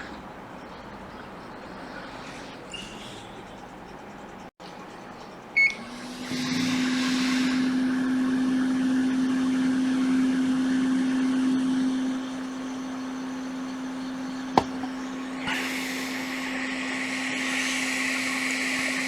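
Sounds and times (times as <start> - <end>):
blower humming with air rush: 5.4 - 19.0
rework station beep: 5.6 - 5.9.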